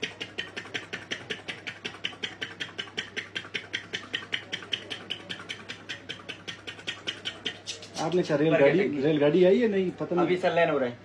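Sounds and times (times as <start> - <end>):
man imitating machine clicking: 0.0 - 8.3.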